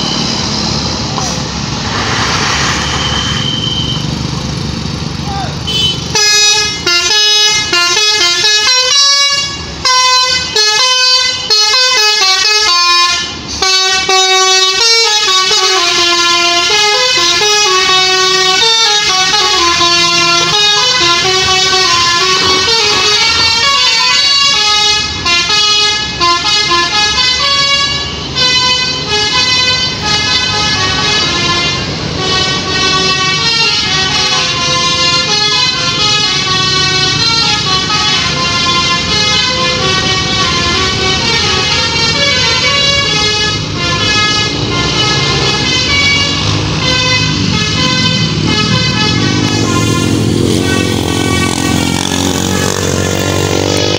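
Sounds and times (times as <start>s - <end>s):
engine running: 0.0s - 7.8s, 30.7s - 53.9s
multi-tone musical bus horn: 5.6s - 53.9s.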